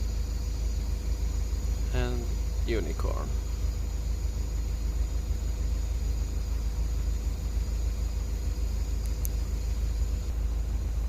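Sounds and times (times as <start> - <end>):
low outdoor rumble: 0.0 - 11.0
even hiss: 1.8 - 3.4
faint high ticks: 8.9 - 9.9.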